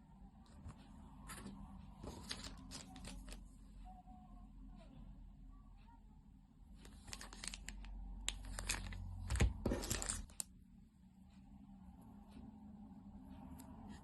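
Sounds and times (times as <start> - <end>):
packaging tearing and crinkling: 7.0 - 10.4.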